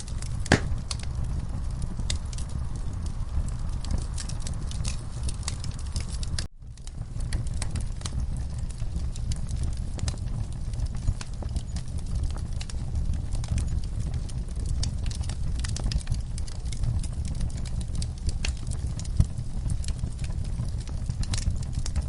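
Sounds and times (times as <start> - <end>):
logs crackling and popping: 0.0 - 22.0
low rumble of flames: 0.0 - 22.0.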